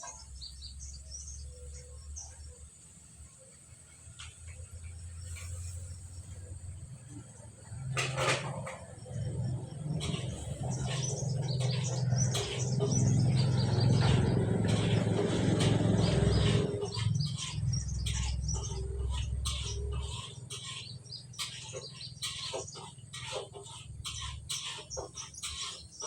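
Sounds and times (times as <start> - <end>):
small birds chirping: 0.0 - 8.0, 8.6 - 26.0.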